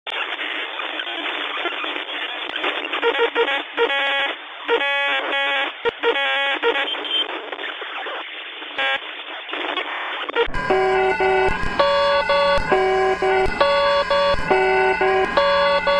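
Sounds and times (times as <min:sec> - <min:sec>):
crackly radio static: 0:00.1 - 0:15.9
buzzy tone bursts: 0:10.4 - 0:15.9.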